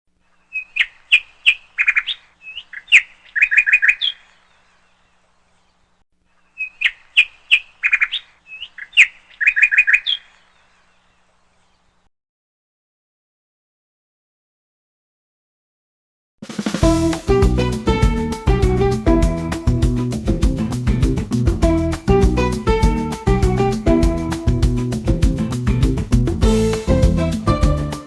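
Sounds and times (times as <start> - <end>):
bird song chirps and rattles: 0.3 - 5.8, 6.4 - 12.0.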